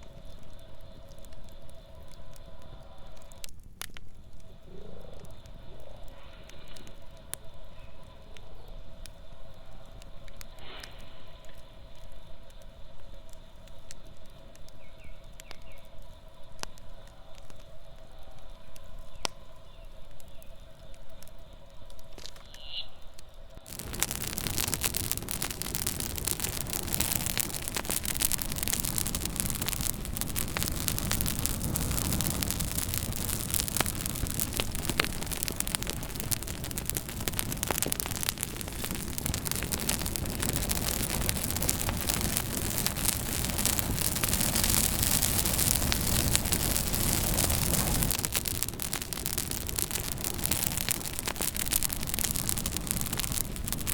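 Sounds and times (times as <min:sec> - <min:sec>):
campfire crackling and popping: 0:00.0 - 0:53.9.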